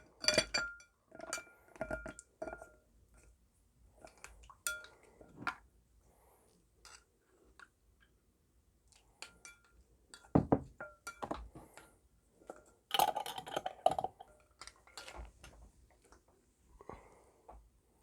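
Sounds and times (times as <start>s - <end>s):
ice cubes clinking in a glass: 12.9s - 14.3s.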